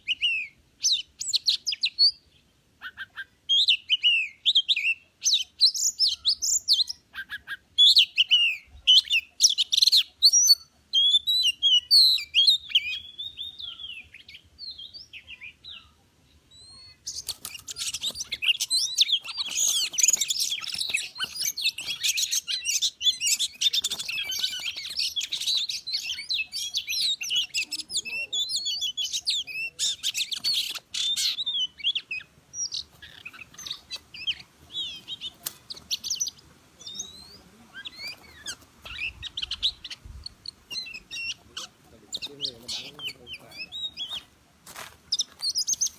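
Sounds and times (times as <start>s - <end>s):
bird fast chattering calls: 17.0s - 44.3s.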